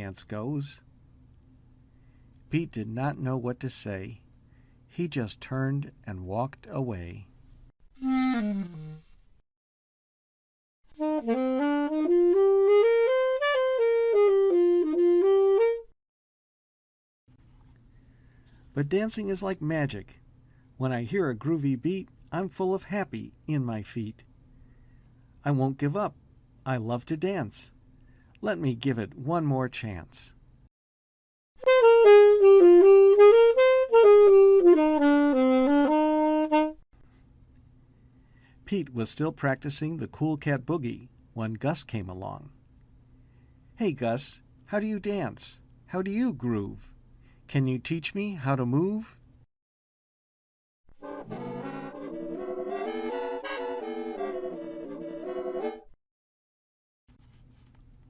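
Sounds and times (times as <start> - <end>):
wind instrument melody: 8.0 - 9.0, 10.9 - 15.9, 31.6 - 36.8, 51.0 - 55.9.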